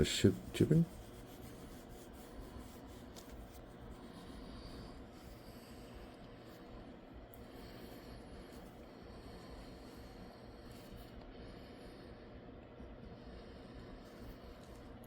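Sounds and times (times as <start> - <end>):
hand rubbing foil card: 0.0 - 5.4.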